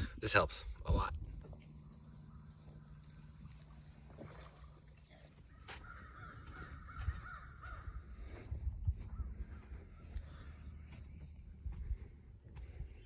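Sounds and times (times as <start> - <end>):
bird calling: 1.4 - 8.2.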